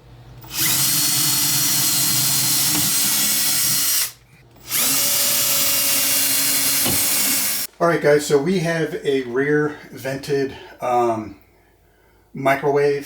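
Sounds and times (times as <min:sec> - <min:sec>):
power drill drilling: 0:00.4 - 0:07.7.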